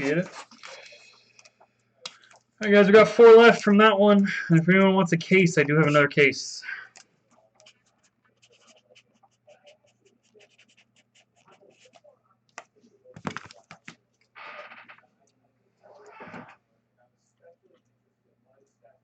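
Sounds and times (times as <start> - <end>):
faint rapid clicking and scratching: 6.9 - 16.6.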